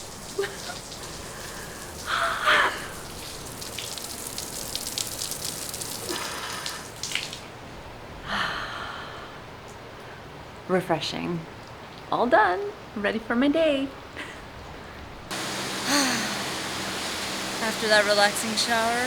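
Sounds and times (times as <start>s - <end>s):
shower spraying and splashing: 0.0s - 7.5s, 15.3s - 19.0s.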